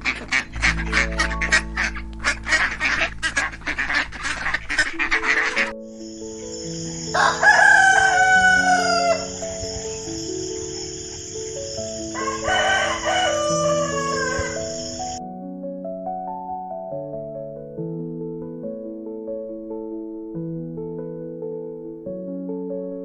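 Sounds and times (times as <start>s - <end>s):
ducks quacking: 0.0s - 5.8s, 6.8s - 15.2s
background music: 0.0s - 23.0s
rooster crowing: 7.0s - 9.5s, 12.0s - 15.2s.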